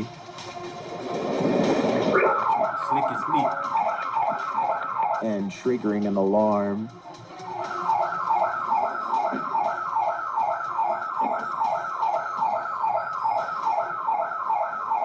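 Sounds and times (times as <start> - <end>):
security alarm siren whooping: 1.4 - 5.6, 7.2 - 15.0.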